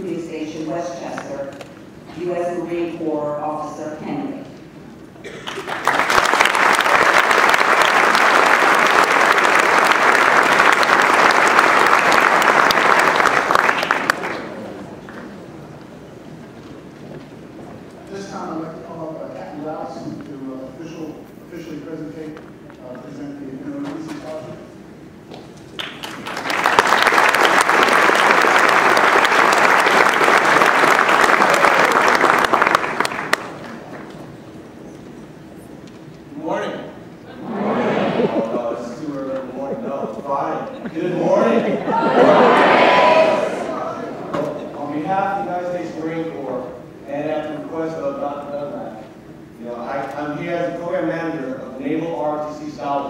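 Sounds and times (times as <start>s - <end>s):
audience applauding: 5.4s - 15.2s, 25.7s - 34.2s, 41.3s - 44.1s.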